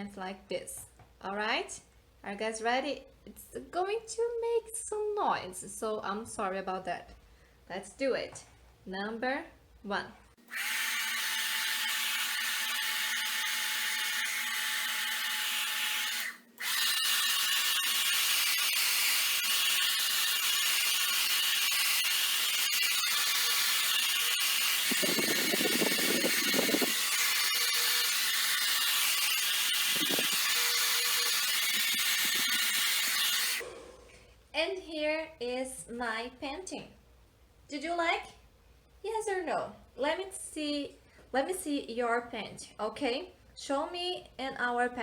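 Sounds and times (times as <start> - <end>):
hair dryer blowing: 10.5 - 33.7.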